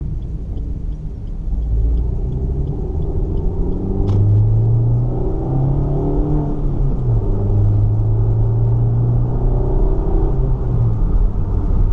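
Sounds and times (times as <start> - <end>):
car engine from inside: 0.0 - 11.9
sharp click: 3.8 - 4.4.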